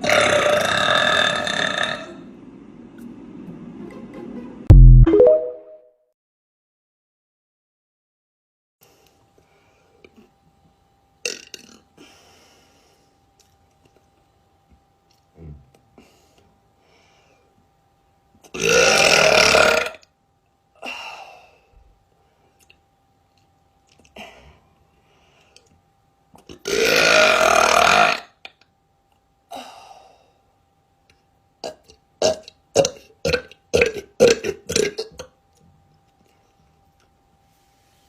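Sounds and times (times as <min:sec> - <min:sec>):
woman burping: 0:31.6 - 0:35.3.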